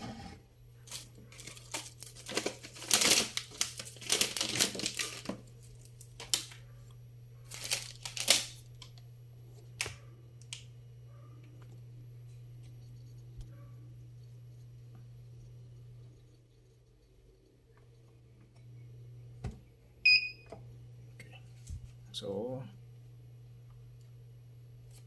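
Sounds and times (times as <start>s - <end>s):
plastic packaging crinkling: 0.8s - 6.6s, 7.5s - 9.0s.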